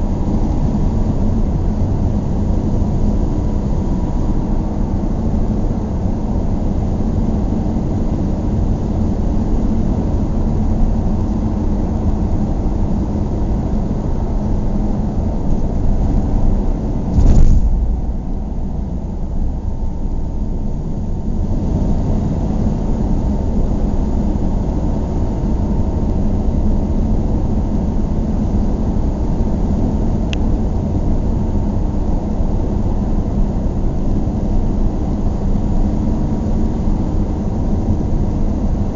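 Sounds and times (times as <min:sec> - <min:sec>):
car engine rumbling: 0:10.3 - 0:26.8
loud thump: 0:17.1 - 0:19.0.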